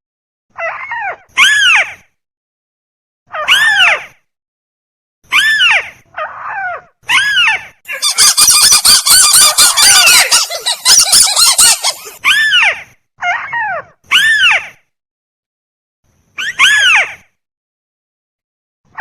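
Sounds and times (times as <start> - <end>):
nasal rail bird calls: 8.0 - 12.2.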